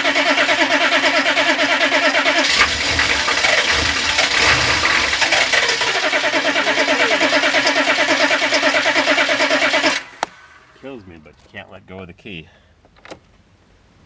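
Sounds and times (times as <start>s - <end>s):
starter cranking diesel engine: 0.0s - 10.7s.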